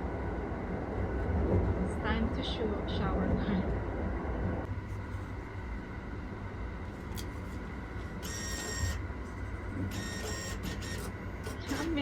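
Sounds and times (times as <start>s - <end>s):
train rumble inside carriage: 0.0s - 7.6s.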